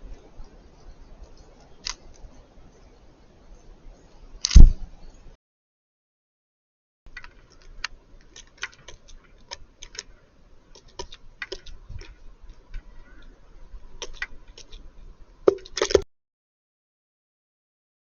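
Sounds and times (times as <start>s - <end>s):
faint steady hum: 7.1s - 16.0s.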